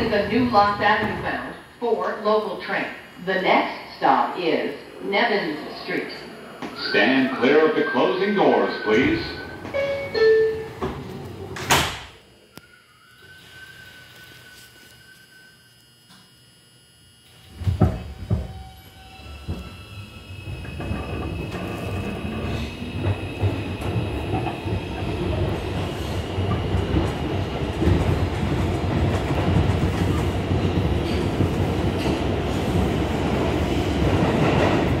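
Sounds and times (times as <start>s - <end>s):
subway train wheels on rail: 0.0s - 1.7s, 8.7s - 11.7s, 17.5s - 35.0s.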